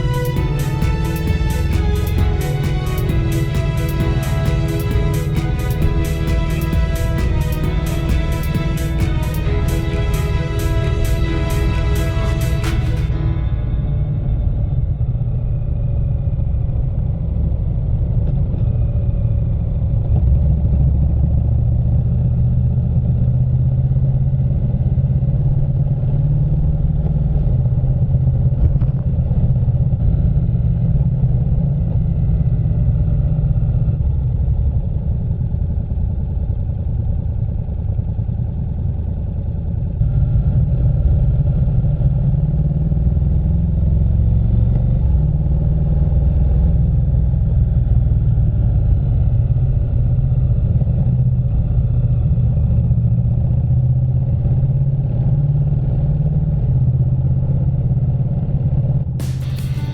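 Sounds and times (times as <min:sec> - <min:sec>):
wind rumble: 0:00.0 - 0:23.2
motorcycle engine running: 0:00.0 - 0:34.8.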